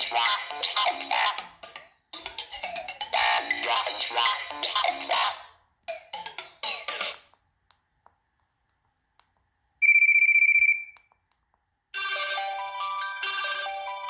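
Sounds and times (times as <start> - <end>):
synthesized ringtone melody: 12.0 - 14.0.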